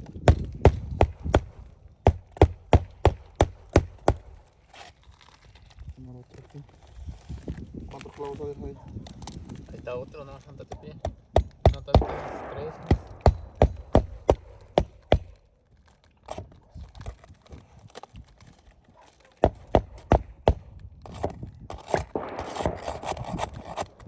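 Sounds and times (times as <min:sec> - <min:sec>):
hammer striking nails: 0:00.2 - 0:04.5, 0:10.7 - 0:15.4, 0:19.4 - 0:24.0.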